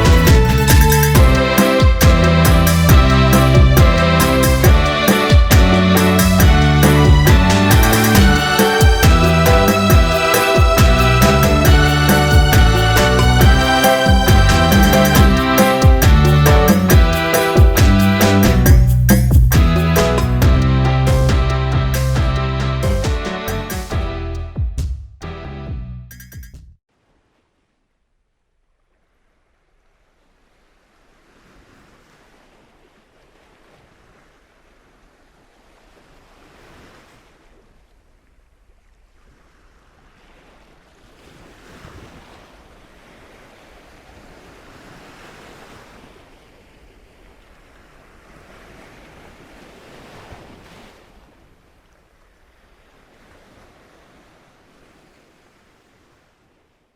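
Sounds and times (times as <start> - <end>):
waves rushing and breaking: 0.0 - 22.4, 29.2 - 56.9.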